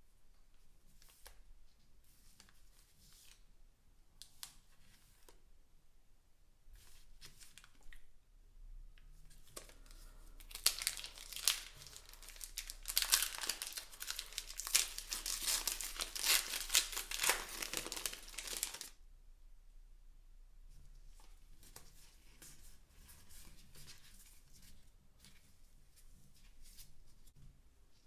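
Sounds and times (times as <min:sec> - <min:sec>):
packaging crinkling and tearing: 0:10.4 - 0:18.9.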